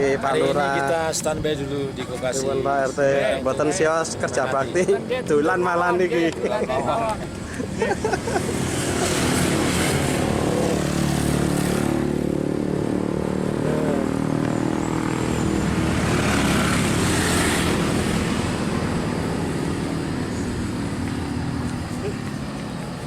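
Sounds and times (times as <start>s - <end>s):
vehicle engine humming: 6.0s - 23.0s.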